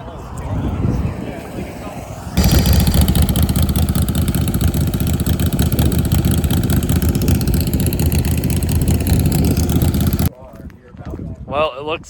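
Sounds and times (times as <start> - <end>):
motorcycle engine running: 2.4 - 10.3.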